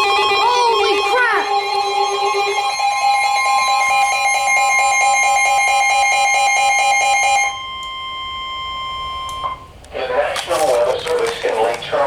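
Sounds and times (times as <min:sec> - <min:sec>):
rapidly pulsing alarm tone: 0:00.0 - 0:09.7.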